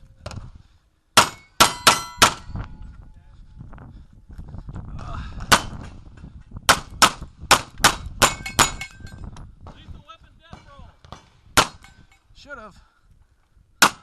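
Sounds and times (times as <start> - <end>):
steel targets ringing: 1.2 - 2.6
pistol shots: 11.1 - 11.9.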